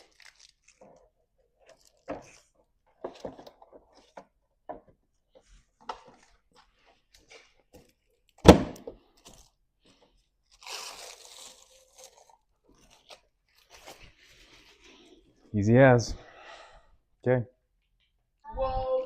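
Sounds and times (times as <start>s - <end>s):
loud thunk: 8.4s - 8.9s.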